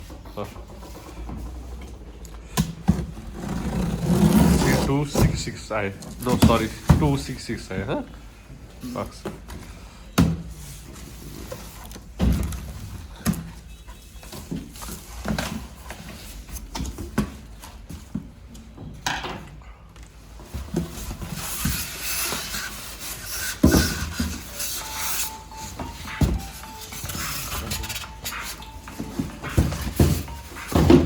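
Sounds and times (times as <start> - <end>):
objects being handled: 20.0 - 31.0.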